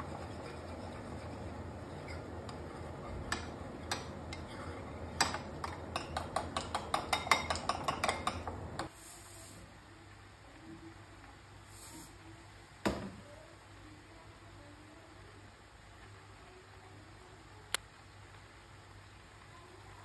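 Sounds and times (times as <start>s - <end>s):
steady hum: 0.0s - 8.9s.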